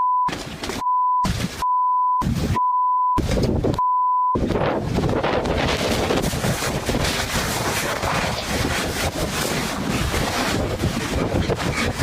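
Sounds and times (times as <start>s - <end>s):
censor bleep tone: 0.0s - 3.2s, 3.8s - 4.4s
rushing noise: 4.4s - 12.0s.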